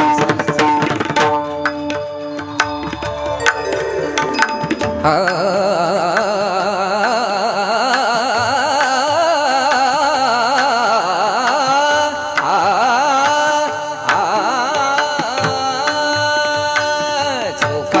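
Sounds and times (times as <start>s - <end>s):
drum strokes: 0.0s - 7.2s
steady sustained notes: 0.6s - 6.9s
man singing wordless vowel run: 5.0s - 18.0s.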